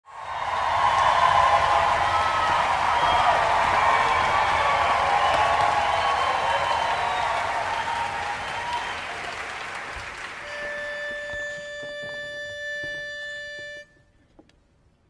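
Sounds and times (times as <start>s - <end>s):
audience applause: 0.1s - 11.2s
pitch pipe note: 10.4s - 14.2s.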